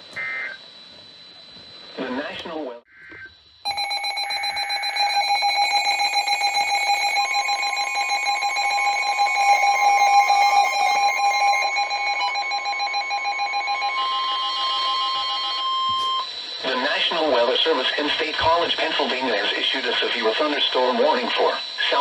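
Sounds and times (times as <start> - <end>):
electronic alarm tones: 0.1 - 19.6
second steady tone: 1.3 - 16.3.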